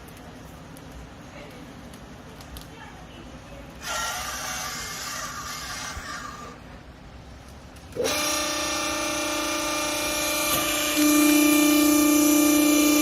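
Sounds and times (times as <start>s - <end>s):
pump motor whining: 3.8s - 6.7s, 7.8s - 13.0s.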